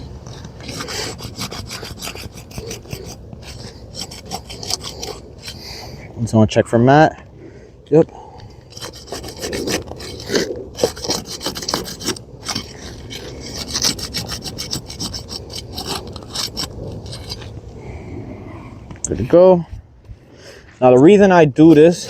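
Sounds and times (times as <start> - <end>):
pry bar scraping asphalt shingles: 0.0 - 6.1, 7.9 - 18.0, 20.8 - 22.0.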